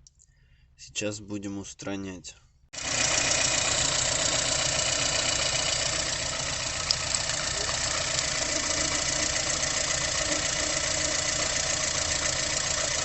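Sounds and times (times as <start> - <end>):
car engine idling: 2.8 - 13.0.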